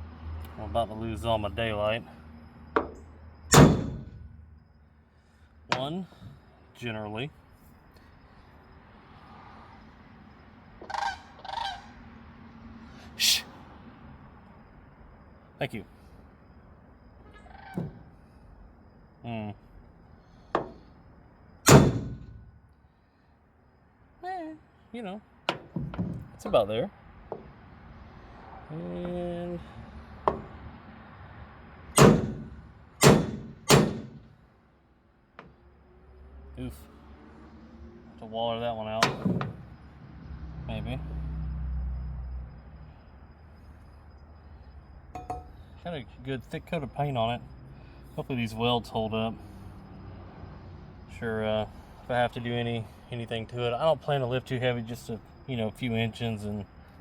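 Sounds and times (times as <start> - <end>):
sharp loud strikes: 3.5 - 4.2, 21.7 - 22.4, 32.0 - 34.2
goose honking: 10.9 - 11.9
short sharp hiss: 13.2 - 13.5.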